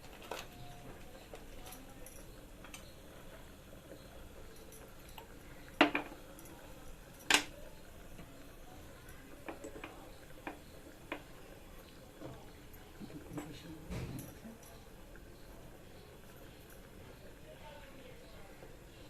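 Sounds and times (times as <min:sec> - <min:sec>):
utensil clinking on cooking pot: 0:03.9 - 0:07.6.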